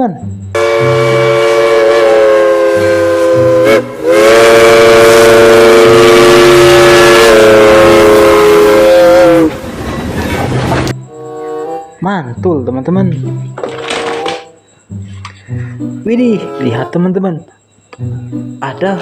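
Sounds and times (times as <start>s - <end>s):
steam locomotive whistle: 0.4s - 9.6s, 11.0s - 12.0s.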